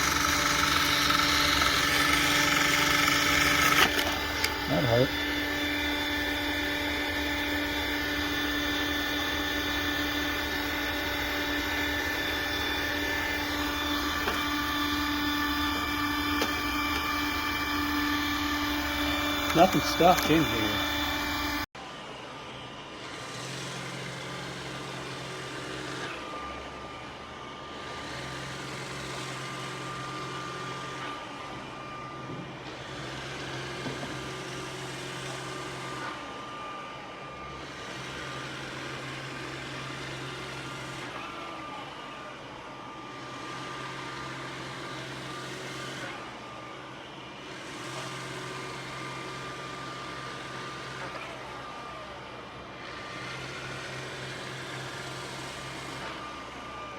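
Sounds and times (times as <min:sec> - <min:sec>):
robot vacuum motor whirring: 0:00.0 - 0:21.7.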